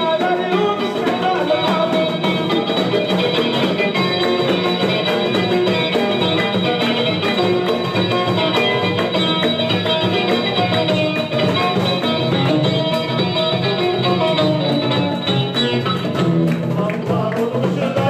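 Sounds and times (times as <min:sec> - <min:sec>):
plucked strings: 0:00.0 - 0:17.6
drums: 0:00.0 - 0:18.0
live band music: 0:00.0 - 0:18.0.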